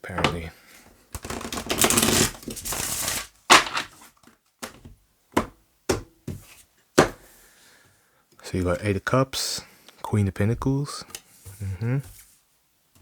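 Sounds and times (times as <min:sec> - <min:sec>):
cards being shuffled: 0:01.2 - 0:04.0
cards slapping down: 0:01.2 - 0:04.0.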